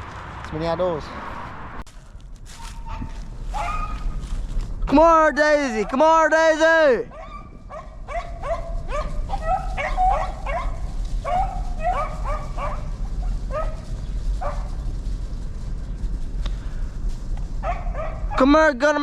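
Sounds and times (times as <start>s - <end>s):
dogs yipping and whining: 2.7s - 4.2s, 7.1s - 14.7s.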